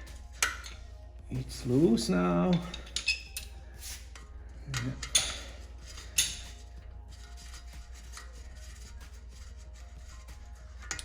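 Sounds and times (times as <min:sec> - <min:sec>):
steady low hum: 0:00.0 - 0:11.0
wrench clinking on metal plug: 0:02.5 - 0:03.4, 0:04.8 - 0:05.5.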